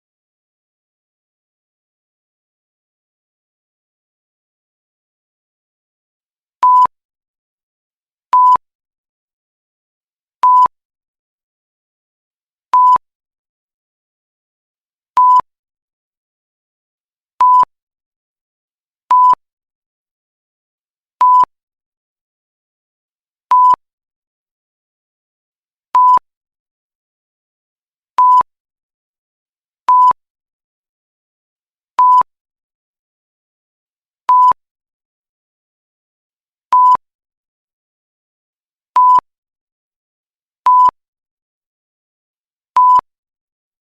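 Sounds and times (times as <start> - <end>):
censor bleep: 6.6 - 7.0, 8.4 - 8.6, 10.4 - 10.7, 12.8 - 13.0, 15.2 - 15.5, 17.4 - 17.7, 19.1 - 19.4, 21.2 - 21.5, 23.5 - 23.8, 26.0 - 26.3, 28.2 - 28.5, 29.9 - 30.2, 32.0 - 32.3, 34.3 - 34.6, 36.7 - 37.0, 39.0 - 39.3, 40.7 - 41.0, 42.8 - 43.1.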